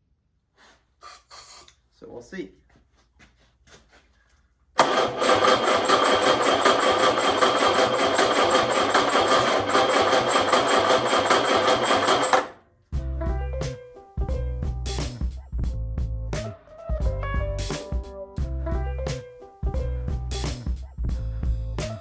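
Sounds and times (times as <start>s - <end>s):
engine cranking by starter: 4.8s - 12.6s
music: 12.9s - 22.0s.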